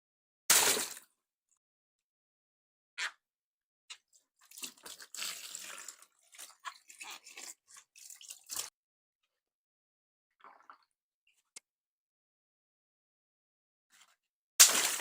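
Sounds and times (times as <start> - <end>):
water balloon popping: 14.6 - 15.0.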